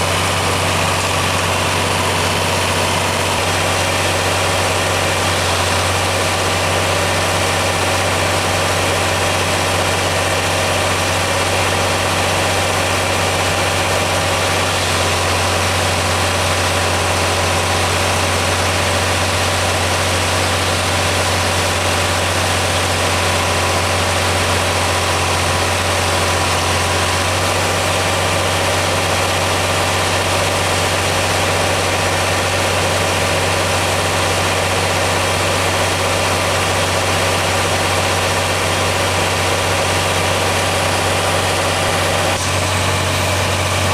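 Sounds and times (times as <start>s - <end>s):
tractor engine running: 0.0s - 43.9s.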